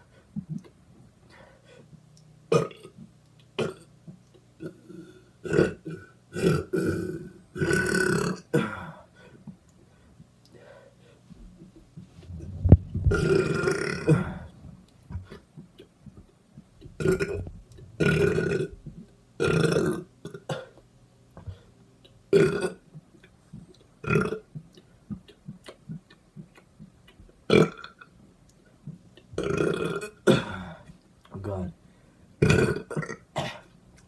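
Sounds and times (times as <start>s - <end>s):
person belching: 2.5s - 3.0s, 3.6s - 3.9s, 4.6s - 8.9s, 13.1s - 14.5s, 17.0s - 18.8s, 19.4s - 20.7s, 22.3s - 22.8s, 24.0s - 24.4s, 27.5s - 28.0s, 29.4s - 30.8s, 32.4s - 33.6s.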